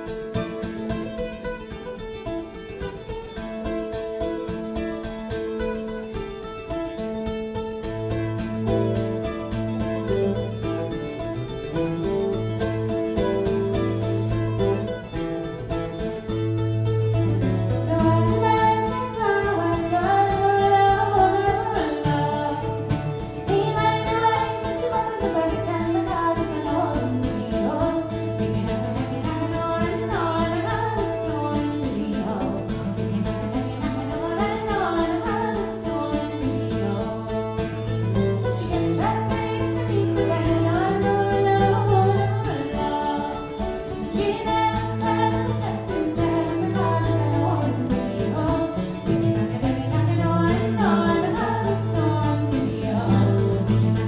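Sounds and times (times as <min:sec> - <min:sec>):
plucked strings: 0:00.0 - 0:54.0
person singing: 0:17.8 - 0:37.8, 0:38.6 - 0:54.0.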